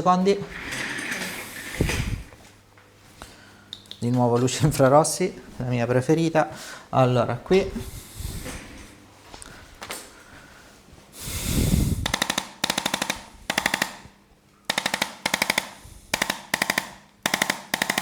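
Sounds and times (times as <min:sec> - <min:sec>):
rapid mechanical clicking bursts: 0:11.5 - 0:18.0.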